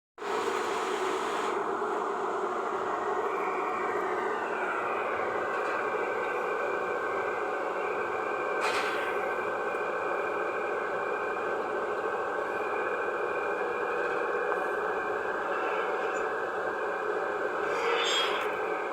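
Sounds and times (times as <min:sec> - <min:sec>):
constant high whine: 0:00.2 - 0:18.9
excavator engine running: 0:00.2 - 0:18.9.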